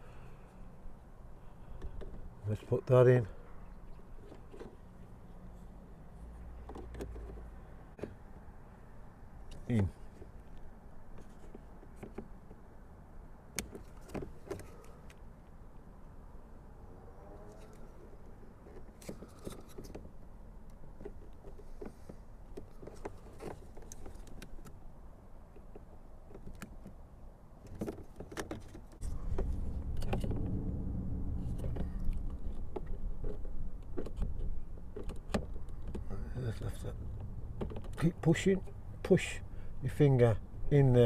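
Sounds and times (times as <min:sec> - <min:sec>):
small plastic clicks and knocks: 0:20.7 - 0:24.8
steady low rumble: 0:29.0 - 0:41.0.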